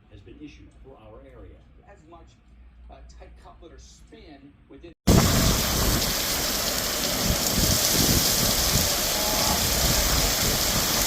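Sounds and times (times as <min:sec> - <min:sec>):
heavy rain pouring: 0:05.1 - 0:11.0
low thunder rumble: 0:05.1 - 0:11.0.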